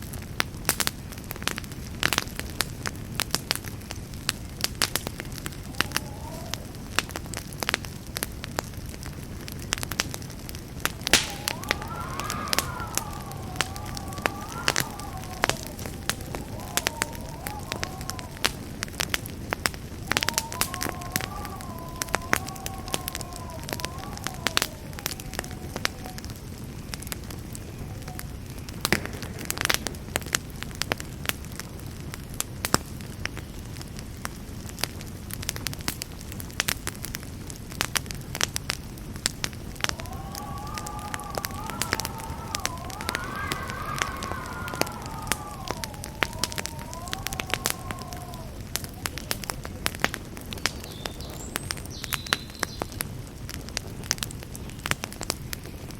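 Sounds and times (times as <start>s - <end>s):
campfire crackling and popping: 0.0s - 55.9s
wavering whistling tone: 11.0s - 18.8s, 20.1s - 26.3s, 39.8s - 49.6s.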